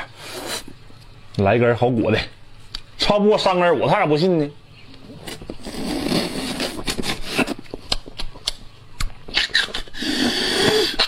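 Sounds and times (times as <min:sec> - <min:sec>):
person slurping: 0:00.1 - 0:00.7, 0:05.3 - 0:07.6, 0:09.3 - 0:11.0
wet mouth clicks and smacks: 0:07.6 - 0:09.9.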